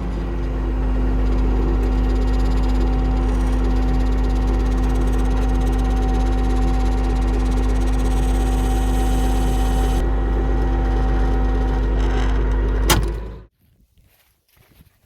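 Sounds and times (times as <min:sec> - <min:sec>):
tractor engine running: 0:00.0 - 0:13.5.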